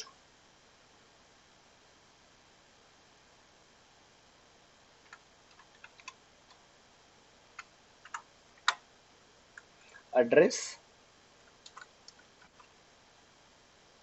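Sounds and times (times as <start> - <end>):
keyboard and mouse clicks: 5.0 - 6.6, 7.6 - 8.8, 11.5 - 12.8.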